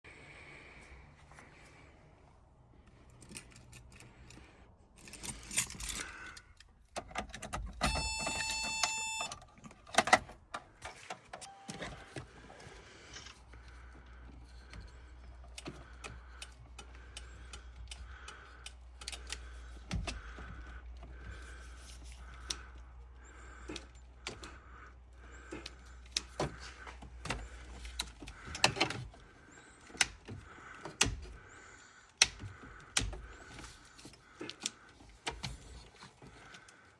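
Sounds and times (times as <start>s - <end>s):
electronic warning tone: 7.8s - 9.4s.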